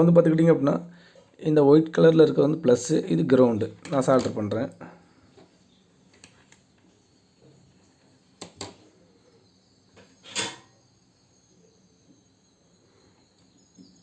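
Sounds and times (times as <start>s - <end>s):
faint clicks and taps of tools: 8.4s - 8.8s.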